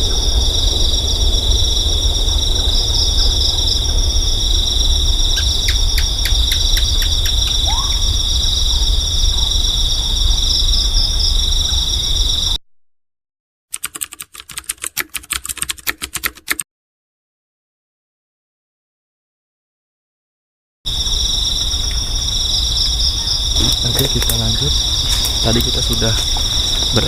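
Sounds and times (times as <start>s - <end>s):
low rumble: 0.0s - 12.6s, 21.0s - 27.0s
night insects chorus: 0.0s - 12.6s, 20.9s - 27.0s
sharp clicking calls: 5.4s - 8.0s, 23.2s - 27.0s.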